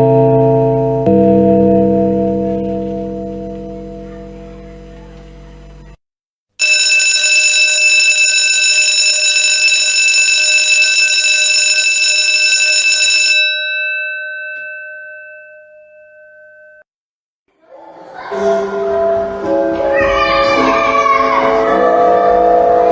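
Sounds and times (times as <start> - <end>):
school bell ringing: 6.6 - 16.8.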